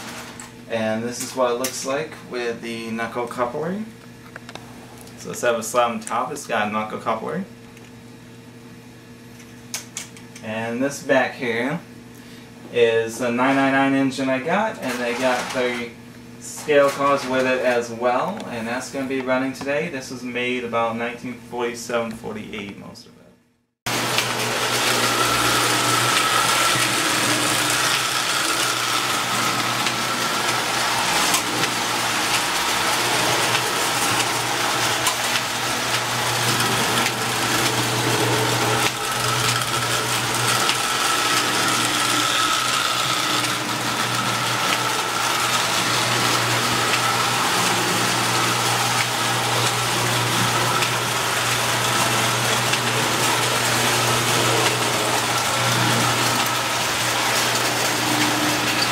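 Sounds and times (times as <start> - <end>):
electric toy train running: 23.9 - 58.9.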